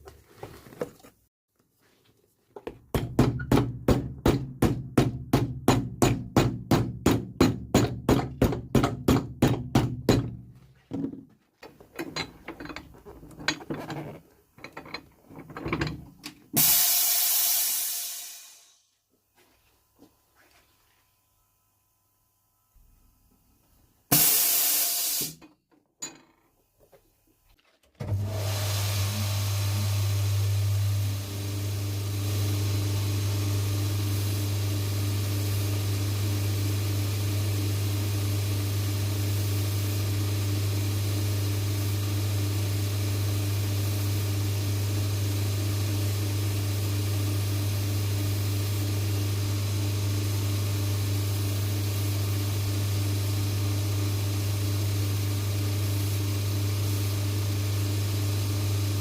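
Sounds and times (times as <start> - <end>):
loud hissing burst: 16.6 - 18.9, 24.1 - 25.4, 28.3 - 30.5
electric motor humming: 28.1 - 37.0.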